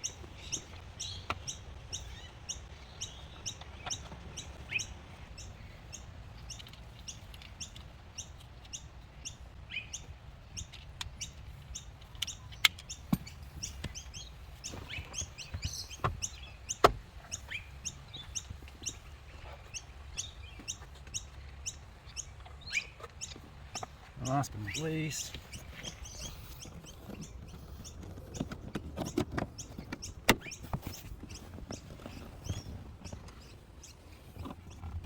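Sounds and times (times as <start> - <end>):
bird chirping: 0.0 - 35.0
sharp clicks and knocks: 10.6 - 17.4, 25.3 - 33.5.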